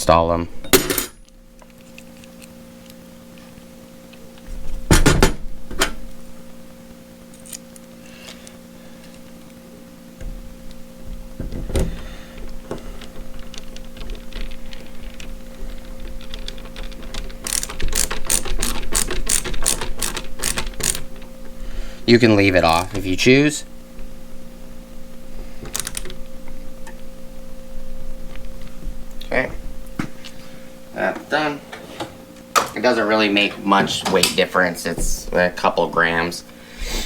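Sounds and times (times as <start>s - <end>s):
steady low hum: 0.0s - 37.0s
screw turning clicks: 13.4s - 21.0s.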